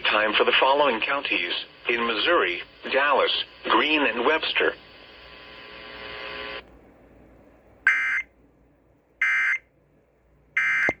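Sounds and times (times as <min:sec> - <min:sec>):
faint steady buzz: 0:10.5 - 0:11.0.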